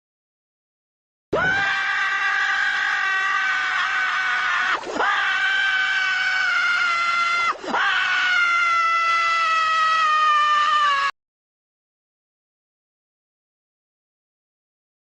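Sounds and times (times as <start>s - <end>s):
high cartoon scream: 1.4s - 11.2s.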